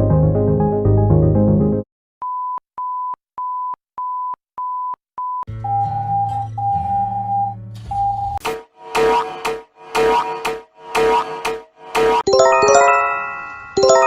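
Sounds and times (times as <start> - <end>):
electronic alarm beeps: 4.0 - 8.4
synth music: 8.4 - 14.0
steady high alarm tone: 8.8 - 14.0.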